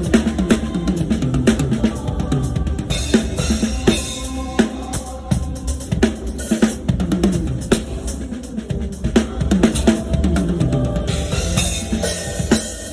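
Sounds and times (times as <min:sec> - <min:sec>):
drum kit groove: 0:00.0 - 0:12.9
low bass: 0:09.5 - 0:12.9.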